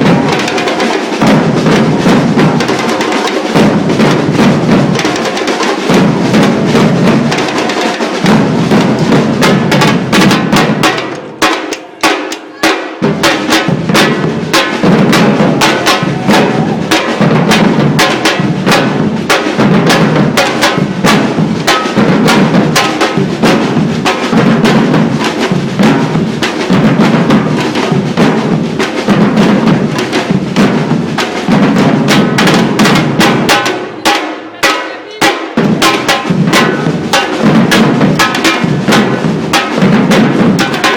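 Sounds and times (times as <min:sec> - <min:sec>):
fast drum strikes: 0:00.0 - 0:40.9
deep bass drums: 0:13.0 - 0:33.5.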